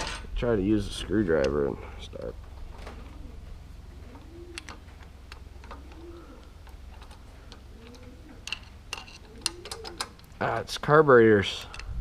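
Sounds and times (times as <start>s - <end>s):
pigeons cooing: 1.7s - 10.4s
metallic clicks of small parts: 4.2s - 10.7s, 11.4s - 12.0s.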